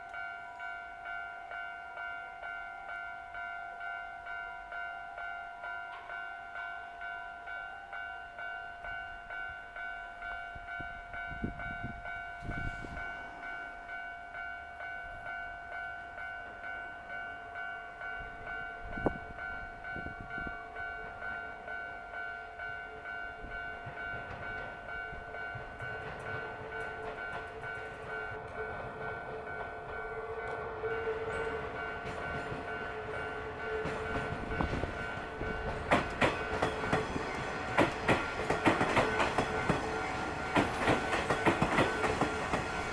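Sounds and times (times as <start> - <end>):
electric train approaching: 0.0 - 42.9
level crossing warning bell: 0.0 - 42.9
train wheels clacking on rails: 18.3 - 42.9.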